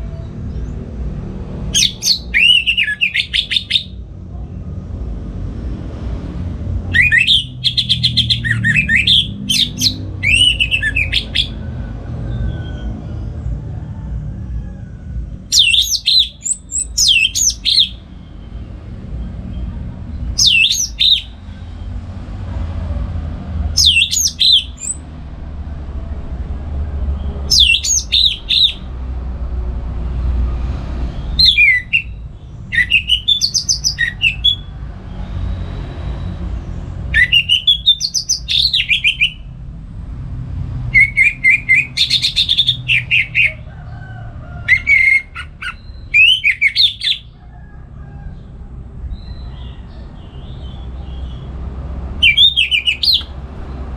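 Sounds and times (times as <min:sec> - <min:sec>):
steady low rumble: 0:00.0 - 0:53.9
thrush singing whistled phrases: 0:01.8 - 0:04.0, 0:06.9 - 0:11.6, 0:15.5 - 0:18.0, 0:20.4 - 0:21.4, 0:23.8 - 0:25.1, 0:27.5 - 0:28.9, 0:31.4 - 0:34.7, 0:37.1 - 0:39.5, 0:40.9 - 0:43.6, 0:44.7 - 0:47.3, 0:52.2 - 0:53.4.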